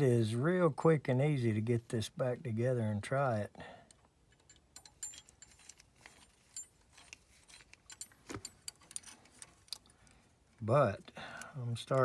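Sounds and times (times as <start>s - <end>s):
metallic clicks and clinks: 3.9s - 10.2s.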